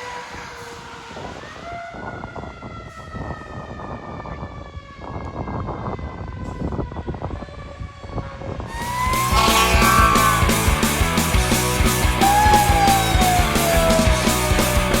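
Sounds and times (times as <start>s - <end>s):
mechanical siren: 0.0s - 15.0s
road noise: 8.7s - 15.0s
truck engine: 8.7s - 15.0s.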